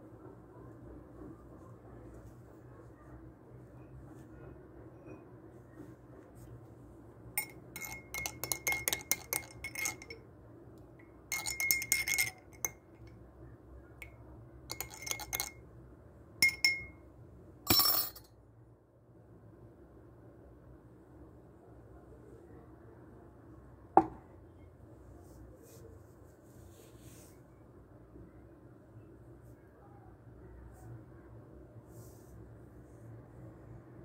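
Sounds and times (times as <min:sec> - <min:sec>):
spoon clinking in a cup: 0:07.4 - 0:10.2, 0:11.0 - 0:13.1, 0:14.0 - 0:15.6, 0:16.4 - 0:17.0, 0:17.7 - 0:18.3.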